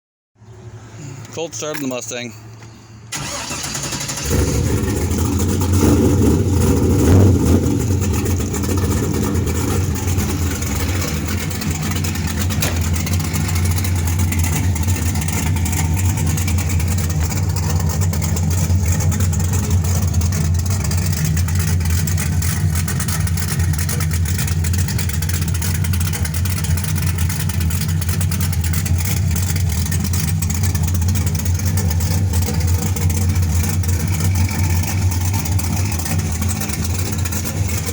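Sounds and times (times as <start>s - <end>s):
car engine idling: 0.6s - 37.9s.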